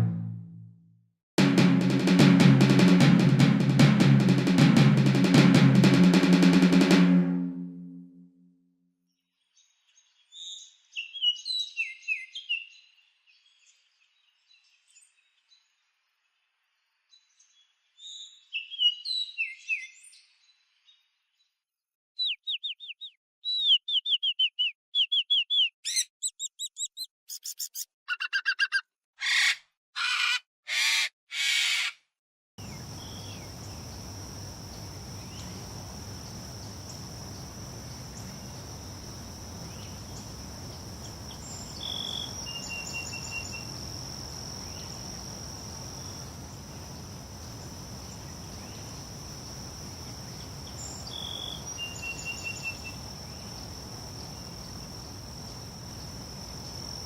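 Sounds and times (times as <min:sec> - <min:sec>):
loud pitched chirping calls: 0:22.2 - 0:31.9, 0:32.6 - 0:53.5
high insect-like drone: 0:32.6 - 0:57.0.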